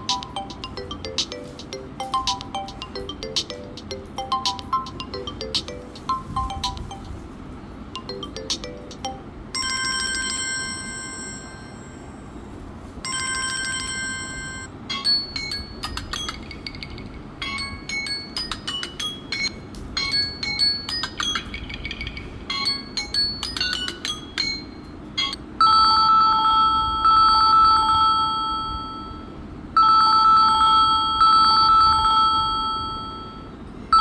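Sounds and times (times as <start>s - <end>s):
short melodic ringtone: 0.0s - 7.2s, 8.0s - 11.6s
high chiming melody: 0.0s - 7.3s, 8.0s - 12.4s, 13.1s - 25.4s.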